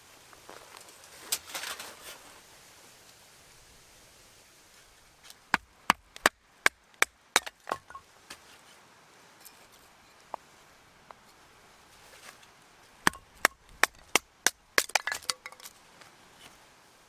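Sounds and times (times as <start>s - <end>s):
blade chopping firewood: 5.5s - 8.0s, 13.0s - 15.7s.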